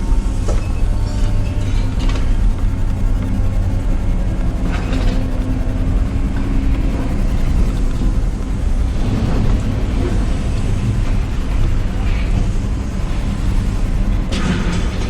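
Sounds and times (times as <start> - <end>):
truck engine and road rumble: 0.0 - 15.0.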